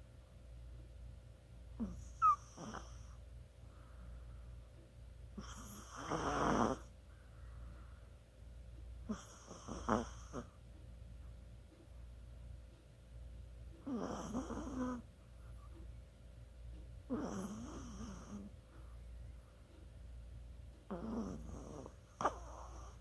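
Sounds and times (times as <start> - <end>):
dog snoring: 1.8 - 3.2, 5.4 - 6.9, 9.0 - 10.6, 13.8 - 15.1, 17.1 - 18.6, 20.9 - 23.0.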